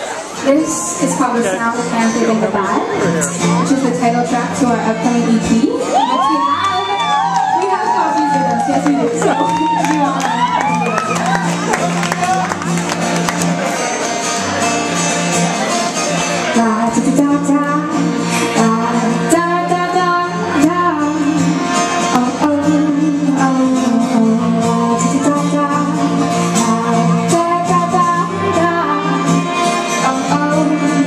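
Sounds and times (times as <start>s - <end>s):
live band playing: 0.0s - 31.0s
person singing: 16.4s - 31.0s.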